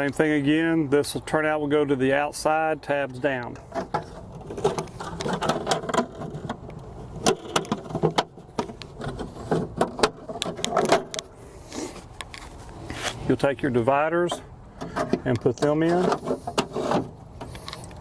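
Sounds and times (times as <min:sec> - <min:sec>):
panel rubbing and scraping: 0:03.6 - 0:13.3, 0:14.3 - 0:17.9.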